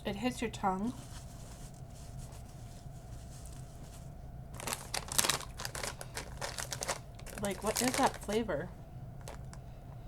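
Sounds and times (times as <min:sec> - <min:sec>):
steady low hum: 0:00.0 - 0:10.0
plastic chip bag crinkling: 0:04.5 - 0:09.6.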